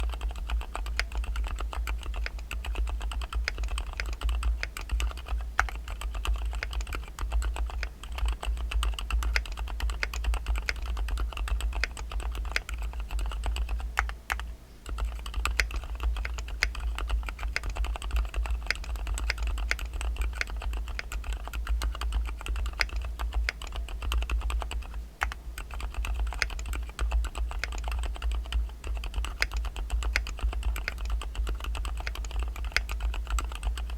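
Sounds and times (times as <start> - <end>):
fast typing on mechanical keyboard: 0.0 - 33.9
steady low hum: 0.0 - 33.9.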